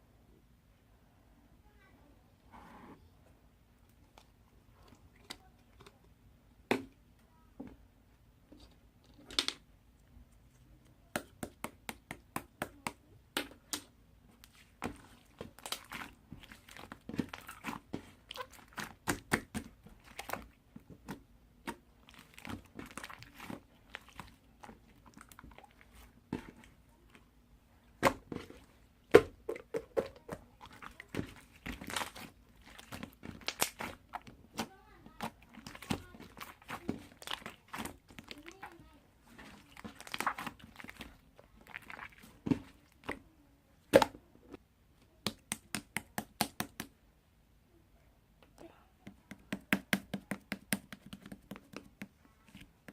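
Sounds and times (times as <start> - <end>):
objects being handled: 27.9 - 43.2.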